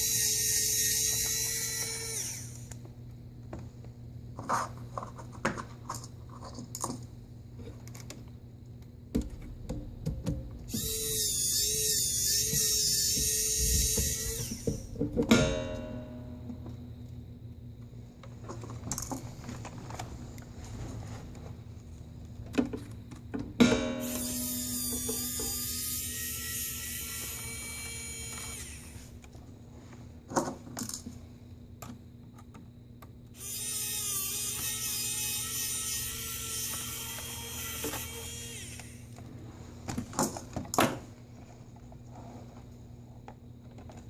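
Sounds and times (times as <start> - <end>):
electric screwdriver whirring: 0.1 - 2.8, 10.7 - 14.9
knocks of small parts and tools: 11.9 - 16.8, 22.5 - 25.8.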